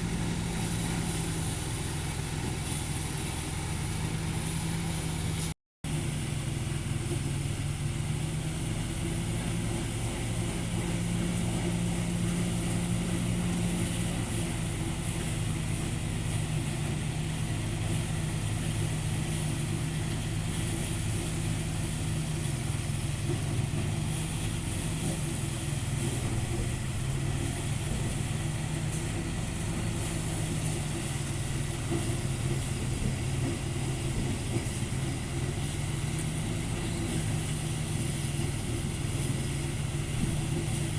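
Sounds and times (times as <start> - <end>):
engine humming steadily: 0.0 - 40.9.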